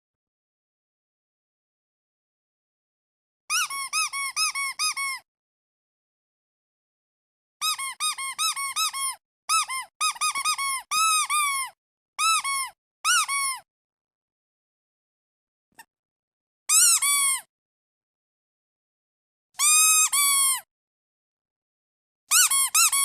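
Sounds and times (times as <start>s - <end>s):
rubber duck toy squeaking: 3.5s - 5.2s, 7.6s - 13.7s, 16.7s - 17.5s, 19.6s - 20.7s, 22.3s - 23.0s.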